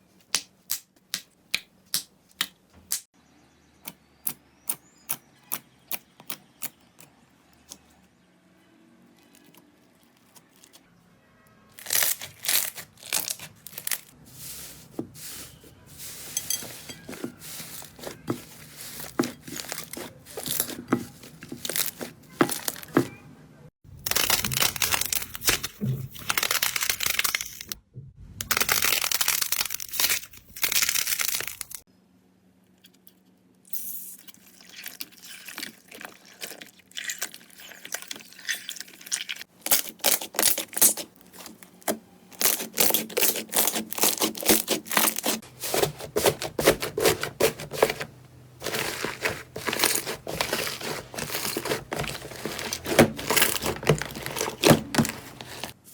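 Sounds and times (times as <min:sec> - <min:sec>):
slime crackling and popping: 0:11.8 - 0:14.1.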